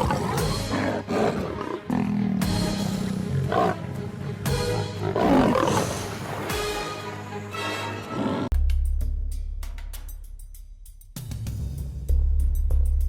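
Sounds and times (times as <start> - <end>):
lions roaring: 0.0 - 4.0, 5.0 - 6.4
dramatic background music: 0.0 - 8.5.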